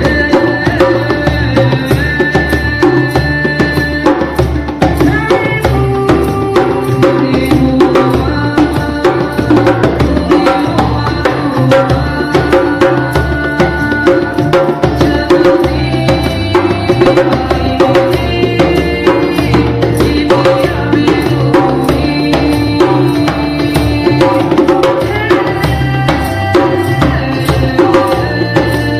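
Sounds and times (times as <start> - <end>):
djembe hand-drum rhythm: 0.0 - 28.9.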